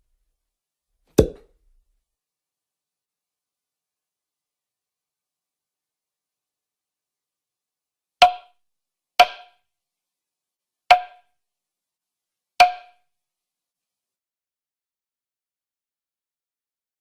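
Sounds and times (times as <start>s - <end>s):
cartoon knocks with ring: 1.2s - 1.4s, 9.2s - 9.6s, 10.9s - 11.3s, 12.6s - 13.0s.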